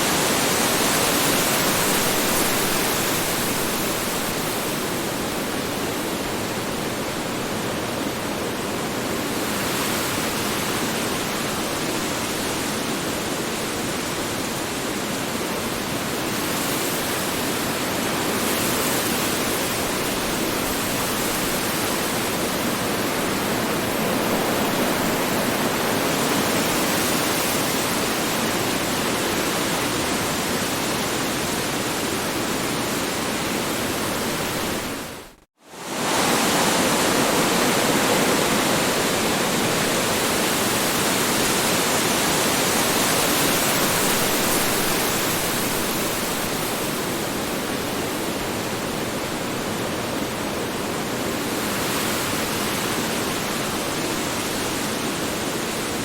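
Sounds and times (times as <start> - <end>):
strong wind rushing: 20.9 - 29.6.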